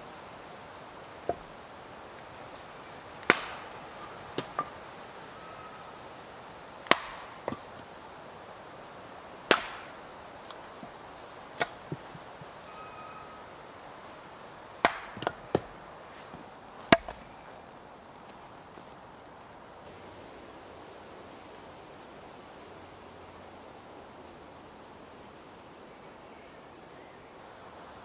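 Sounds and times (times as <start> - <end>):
axe chopping wood: 1.3 - 1.5, 3.2 - 4.8, 6.8 - 7.9, 9.5 - 12.5, 14.8 - 15.8, 16.8 - 17.3.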